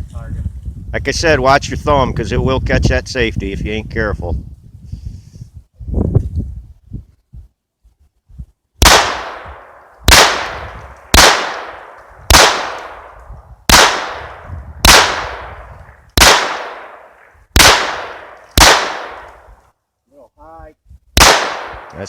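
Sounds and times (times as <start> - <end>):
pistol shots echoing: 8.8 - 19.5, 21.2 - 22.0.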